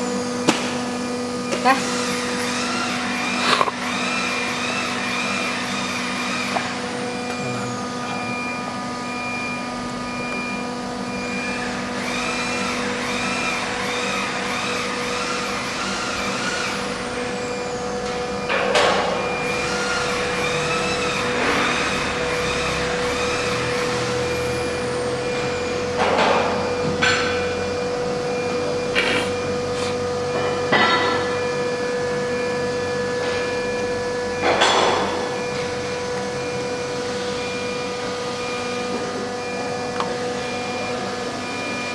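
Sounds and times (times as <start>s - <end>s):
drive motors whining: 0.0s - 41.9s
router spindle whine: 0.0s - 41.9s
short hissing bursts: 29.0s - 30.0s.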